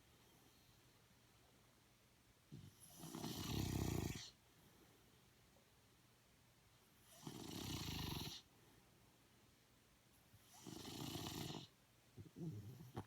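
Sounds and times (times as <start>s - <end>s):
slow snoring: 2.8s - 4.3s, 7.1s - 8.5s, 10.5s - 11.8s, 12.4s - 13.0s.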